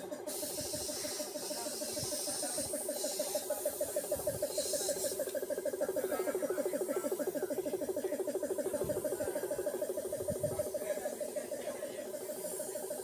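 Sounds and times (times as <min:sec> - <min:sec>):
pulsing animal calls: 0:00.0 - 0:13.0
short bursts of hiss: 0:00.2 - 0:05.4.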